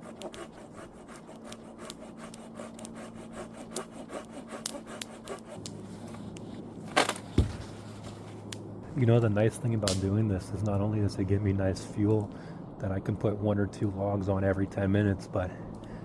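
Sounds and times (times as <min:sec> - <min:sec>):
hand saw cutting wood: 0:00.0 - 0:06.4.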